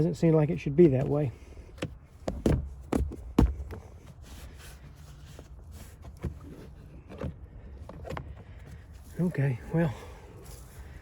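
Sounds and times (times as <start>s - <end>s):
rubber mat rustling: 0.8s - 9.2s
dull thumps: 1.7s - 4.1s.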